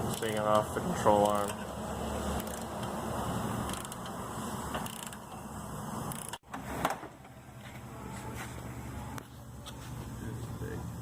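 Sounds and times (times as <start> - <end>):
hand tools ratcheting and scraping: 2.3 - 3.0, 3.6 - 5.4, 6.1 - 6.4.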